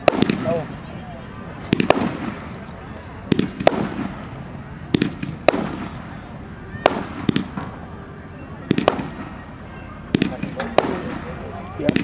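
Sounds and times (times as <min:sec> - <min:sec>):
fireworks bangs with echo: 0:00.0 - 0:00.8, 0:01.5 - 0:02.6, 0:03.2 - 0:08.0, 0:08.6 - 0:12.0.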